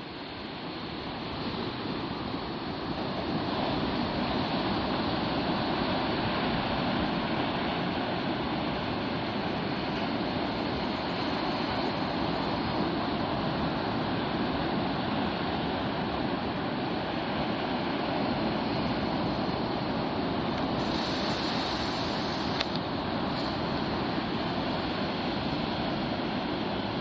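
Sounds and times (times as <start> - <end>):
large waves breaking: 1.0 - 27.0
single click: 20.6 - 23.6
brief high hiss: 20.6 - 23.8.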